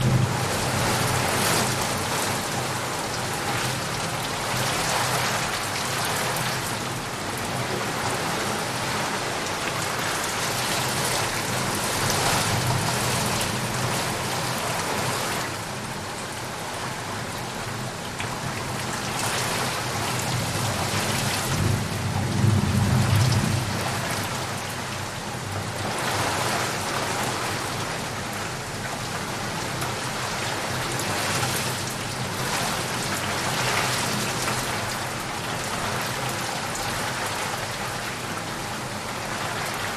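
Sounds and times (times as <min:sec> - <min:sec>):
thunder rumble: 0:00.0 - 0:02.8, 0:20.8 - 0:24.6
heavy rain on leaves: 0:00.0 - 0:39.9.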